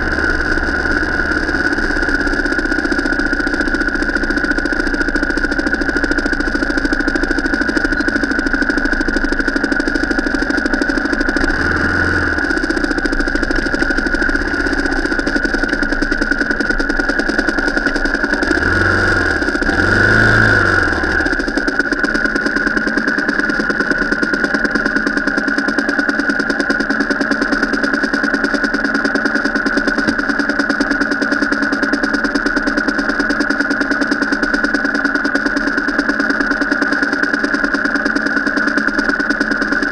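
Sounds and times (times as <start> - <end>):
deep rumbles: 0.0 - 3.6, 9.0 - 24.4
car engine running: 0.0 - 39.9.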